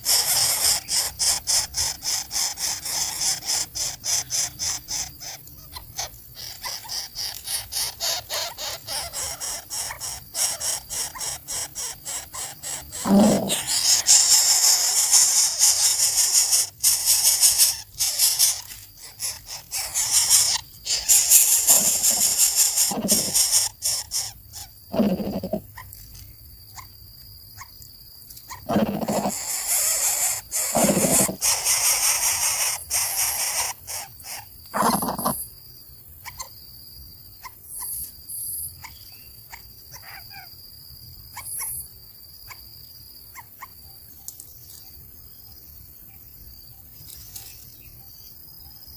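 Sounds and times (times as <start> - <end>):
nestling birds begging calls: 0.0 - 25.9, 28.5 - 35.4.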